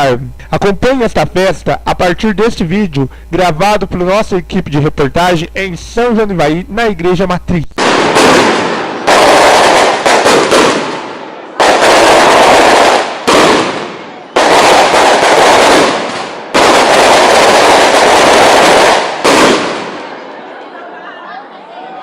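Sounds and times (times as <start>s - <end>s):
fireworks banging: 7.8s - 20.4s.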